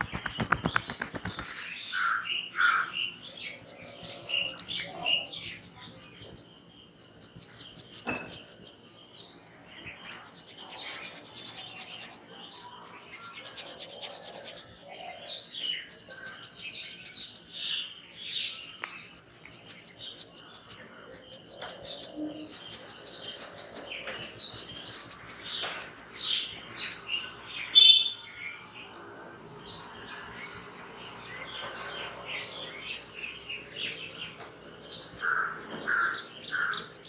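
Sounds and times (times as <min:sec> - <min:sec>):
hands rubbing skin and hair: 0:00.0 - 0:02.4, 0:03.1 - 0:08.8, 0:09.8 - 0:27.0, 0:32.6 - 0:37.0
birds chirping: 0:00.0 - 0:37.0
sharp bird call: 0:27.7 - 0:28.2.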